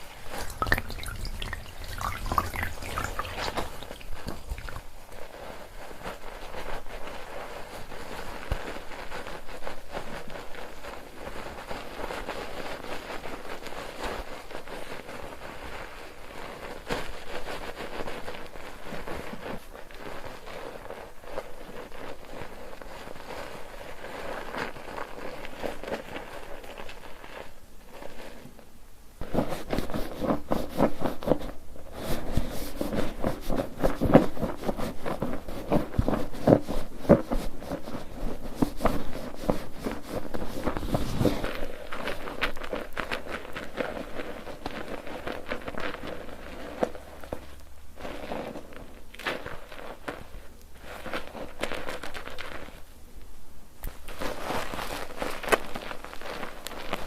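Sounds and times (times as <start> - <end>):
soap lather crackling: 0.0 - 5.0
squelching squeezes: 0.3 - 4.9.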